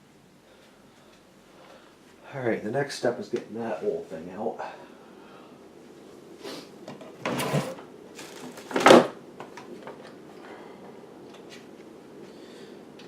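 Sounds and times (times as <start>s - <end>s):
scraping inside computer case: 7.1s - 9.1s.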